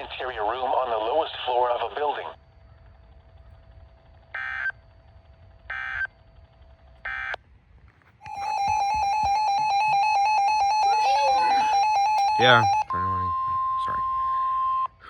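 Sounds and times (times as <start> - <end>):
buzzy digital data bursts: 8.3 - 12.8
pulsing electronic alert tone: 8.3 - 14.2.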